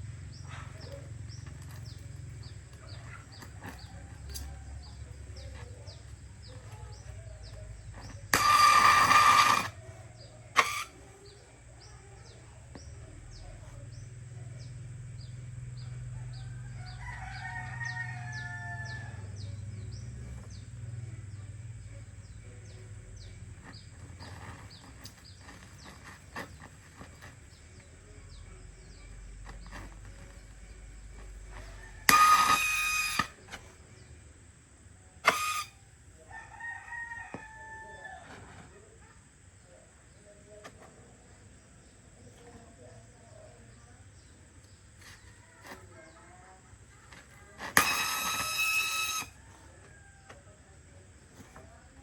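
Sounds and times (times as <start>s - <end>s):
low steady hum: 0.0s - 52.0s
rooster crowing: 16.1s - 19.5s, 31.5s - 33.3s, 36.3s - 38.5s.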